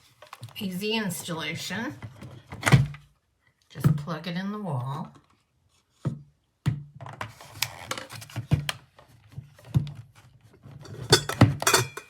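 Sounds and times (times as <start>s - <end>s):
plastic clicks and scrapes: 7.2s - 9.4s.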